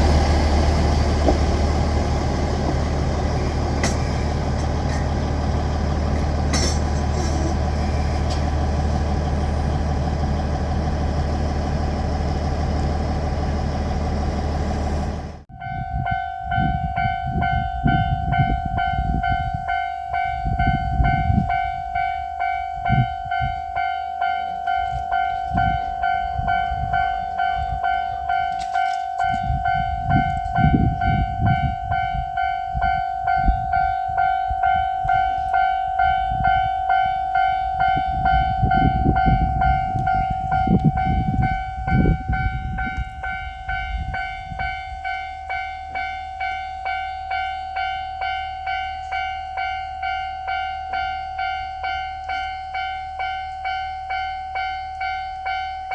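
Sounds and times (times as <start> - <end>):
train wheels clacking: 0.0 - 13.0
crossing warning bell ringing: 0.0 - 55.9.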